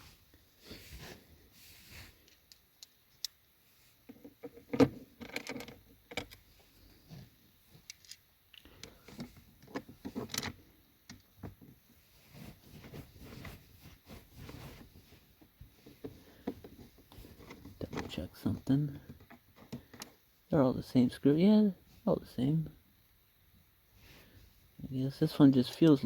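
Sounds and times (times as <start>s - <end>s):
clicks and taps of parts handled: 2.2s - 3.4s, 19.1s - 20.1s.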